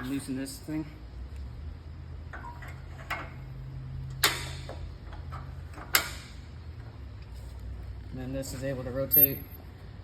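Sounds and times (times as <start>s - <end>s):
steady low hum: 0.0s - 10.0s
sharp metallic clicks and knocks: 4.1s - 6.4s.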